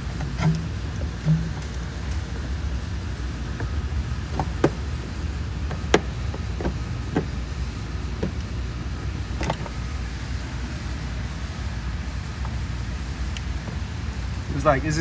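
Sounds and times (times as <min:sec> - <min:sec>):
steady low rumble: 0:00.0 - 0:15.0
clicks and taps of parts: 0:03.6 - 0:09.8.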